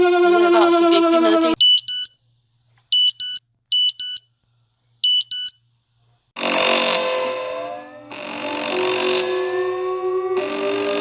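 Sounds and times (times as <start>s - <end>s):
high-pitched electronic alarm beeps: 1.6s - 2.2s, 3.0s - 4.3s, 5.0s - 5.6s.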